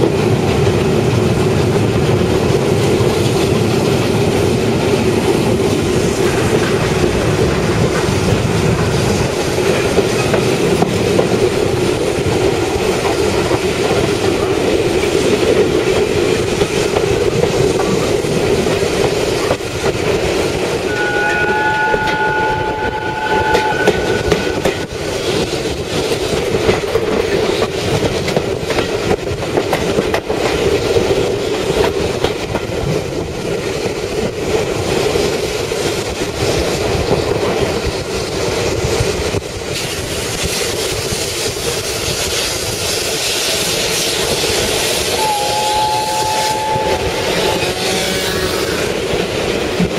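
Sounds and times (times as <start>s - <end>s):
wheels clacking over rail joints: 0.0s - 22.8s, 23.5s - 49.9s
steam train rumbling: 0.0s - 49.9s
train whistle: 20.9s - 25.1s, 45.0s - 49.0s.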